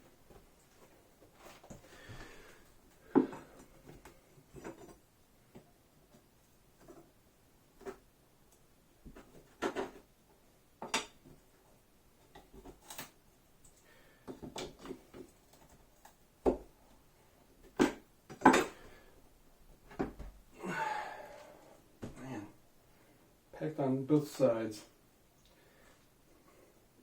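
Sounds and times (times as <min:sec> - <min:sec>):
wooden frames knocking and clattering: 0:09.0 - 0:10.1.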